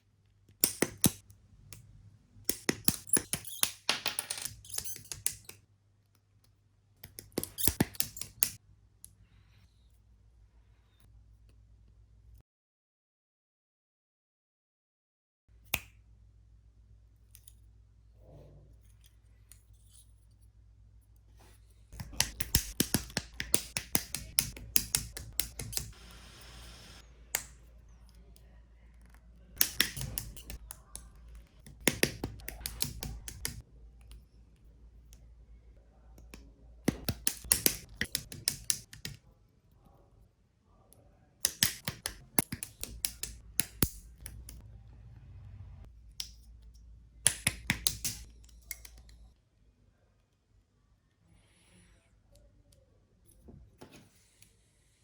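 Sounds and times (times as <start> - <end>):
plastic clicks and snips: 27.3 - 34.2, 41.4 - 44.6, 46.1 - 49.3.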